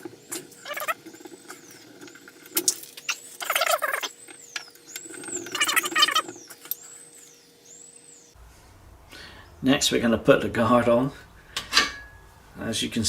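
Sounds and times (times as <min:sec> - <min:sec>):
metal handle arms squeaking and grating: 0:00.0 - 0:06.8.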